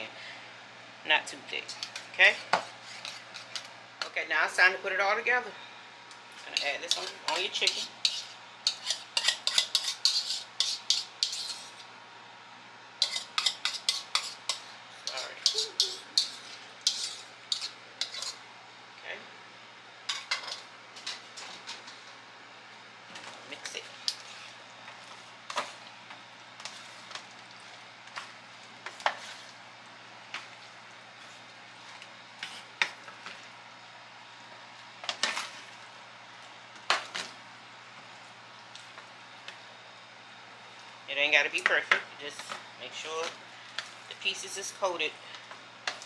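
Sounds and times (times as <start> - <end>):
utensil scraping a bowl: 1.7 - 3.6, 6.5 - 11.9, 13.0 - 18.4.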